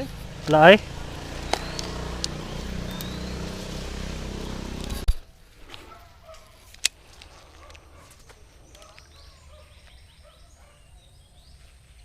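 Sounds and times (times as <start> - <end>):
faint calls: 0.0 - 5.0
small engine running: 0.0 - 5.1.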